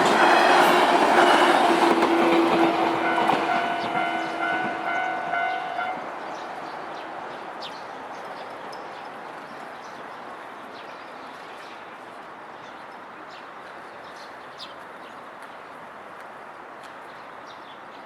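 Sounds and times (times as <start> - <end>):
train running noise: 0.0 - 10.8.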